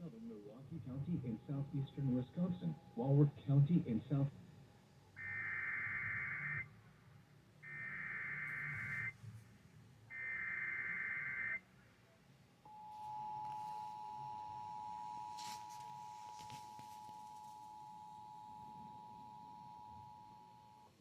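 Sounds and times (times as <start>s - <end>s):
digital data tone bursts: 5.2s - 6.7s, 7.7s - 9.1s
radio static crackle: 5.2s - 6.7s, 7.7s - 9.2s.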